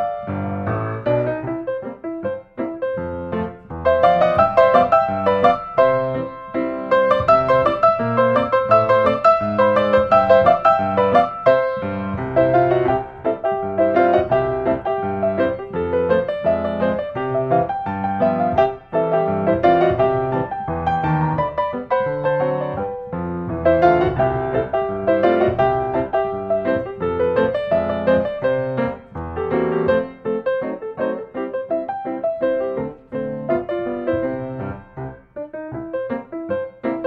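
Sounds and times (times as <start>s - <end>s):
piano music: 0.0s - 37.0s.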